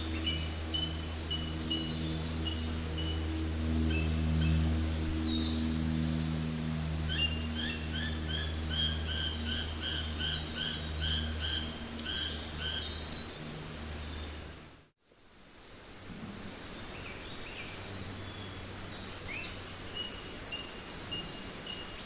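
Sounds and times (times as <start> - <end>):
steady low hum: 0.0 - 14.9.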